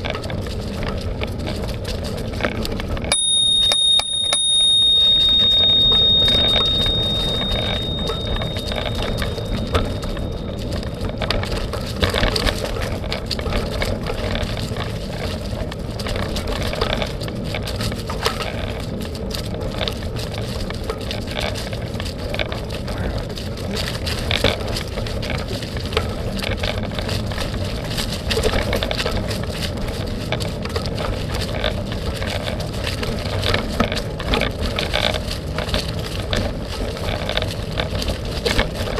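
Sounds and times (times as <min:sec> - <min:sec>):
bike tyres on dirt trail: 0:00.0 - 0:38.9
bell-like ring: 0:03.1 - 0:12.4.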